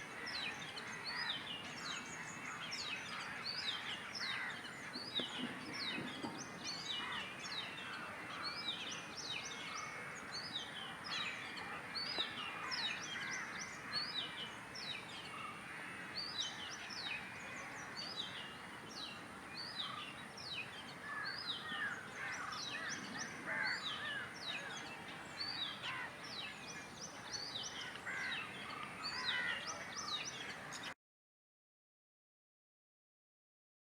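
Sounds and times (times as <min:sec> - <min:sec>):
birds calling: 0:19.8 - 0:30.9.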